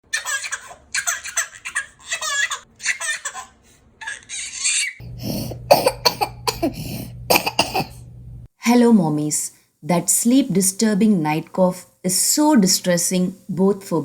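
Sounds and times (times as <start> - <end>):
baby laughing: 0.1 - 7.4
steady low hum: 5.0 - 8.5
child coughing: 5.1 - 8.0.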